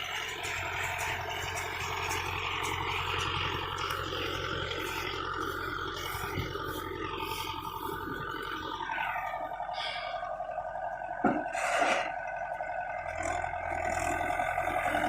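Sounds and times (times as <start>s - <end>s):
baler mechanical clatter: 0.0s - 9.7s
tractor diesel engine under load: 0.0s - 15.0s.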